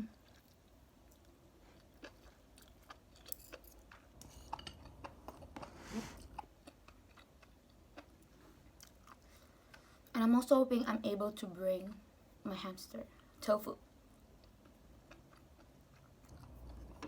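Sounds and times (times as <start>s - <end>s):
person chewing noodles: 0.0s - 10.1s, 14.2s - 17.0s.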